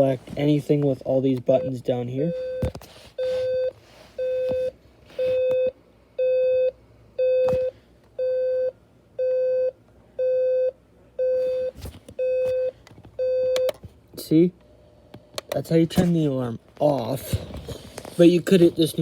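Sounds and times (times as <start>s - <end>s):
alarm clock beeping: 3.2s - 13.7s.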